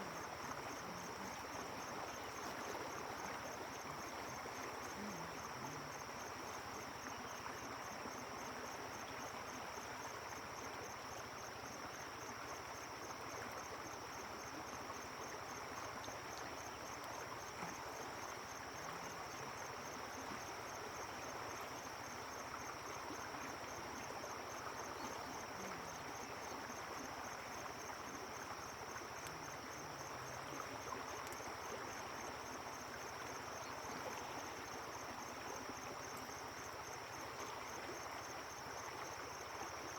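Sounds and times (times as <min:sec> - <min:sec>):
insect trill: 0:00.0 - 0:39.9.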